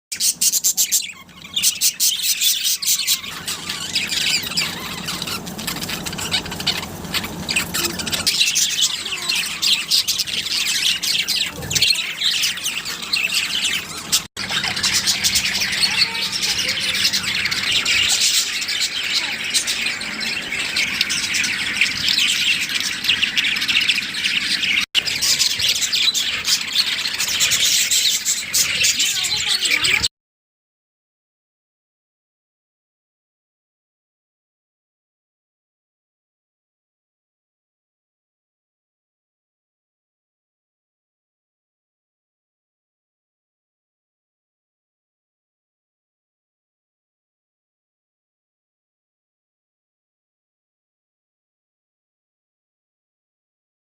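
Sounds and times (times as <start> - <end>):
parrots chattering and squawking: 0.1 - 30.1.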